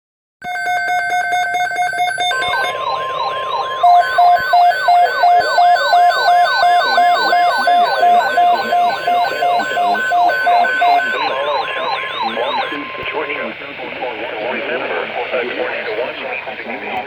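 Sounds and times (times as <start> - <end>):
short beeps: 0.4 - 13.1
steady warning tone: 0.4 - 16.0
siren sweep rising and falling: 2.3 - 12.8.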